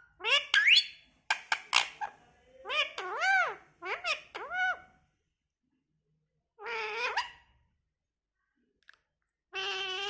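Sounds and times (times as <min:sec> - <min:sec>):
parrot call: 0:00.2 - 0:01.0.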